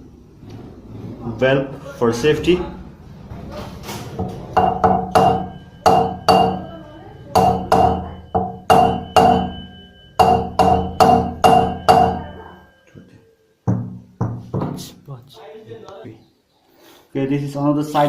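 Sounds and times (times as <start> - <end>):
hammer blows on metal: 4.6 - 6.7, 7.3 - 12.3.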